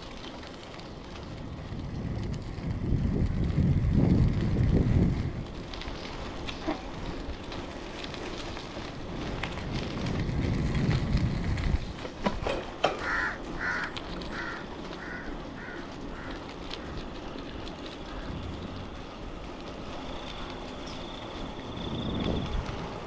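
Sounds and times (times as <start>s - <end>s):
bicycle riding noise: 0.0s - 23.0s
crow cawing: 13.0s - 17.1s.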